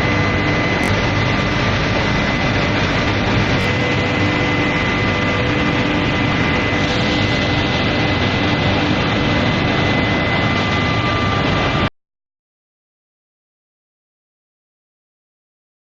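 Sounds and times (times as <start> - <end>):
loud industrial roar: 0.0 - 11.9
steady whining tones: 0.0 - 11.9.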